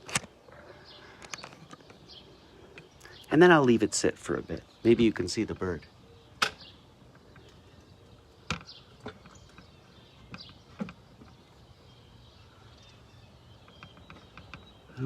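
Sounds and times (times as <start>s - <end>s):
faint bird chirps: 0.4s - 15.0s.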